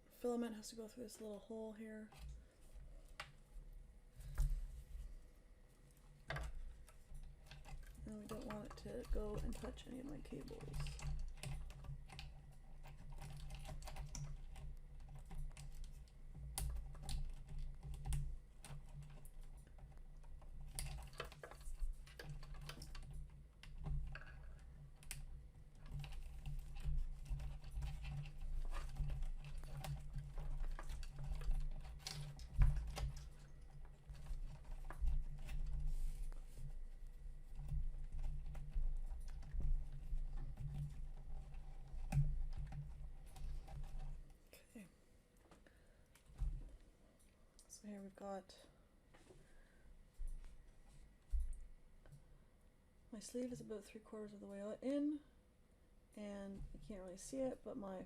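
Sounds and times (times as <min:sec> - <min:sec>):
plastic parts clicking and rattling: 0:06.0 - 0:44.4.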